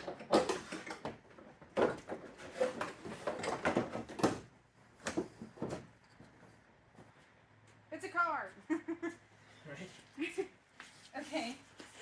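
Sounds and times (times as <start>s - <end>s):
knocks and clattering: 0.0s - 6.5s.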